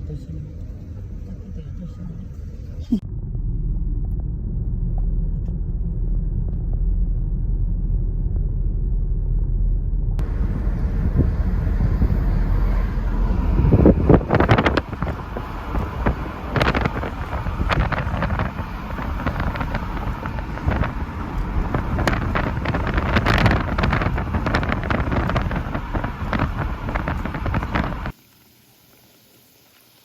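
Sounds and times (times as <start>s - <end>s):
car road rumble: 0.0s - 28.2s
wind buffeting microphone: 10.2s - 28.1s.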